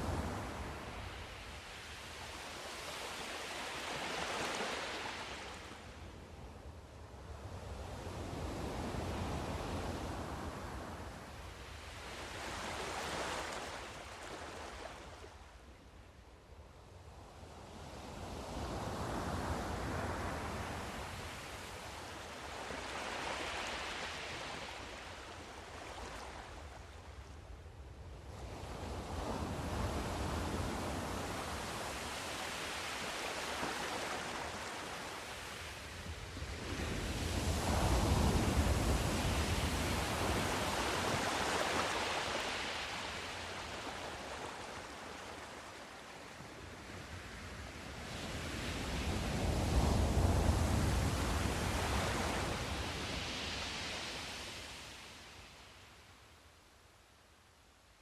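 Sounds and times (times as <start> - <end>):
waves breaking on shore: 0.0 - 6.0, 11.9 - 15.4, 18.7 - 27.0, 28.7 - 55.8.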